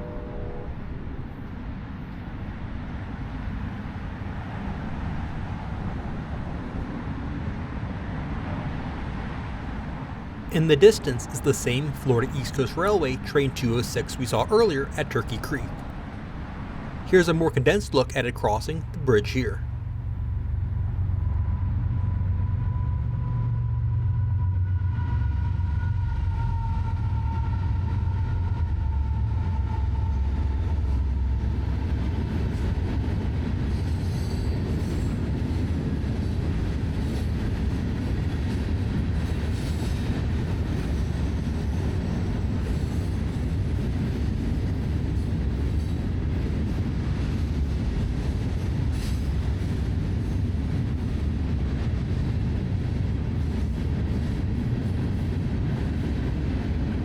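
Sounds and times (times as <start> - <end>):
high tone from train: 0.0 - 1.5, 10.5 - 32.8.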